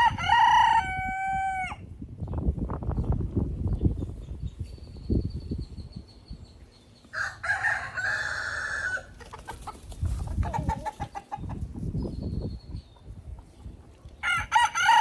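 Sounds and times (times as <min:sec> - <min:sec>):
rooster crowing: 0:00.0 - 0:01.8, 0:07.1 - 0:09.1, 0:14.2 - 0:15.0.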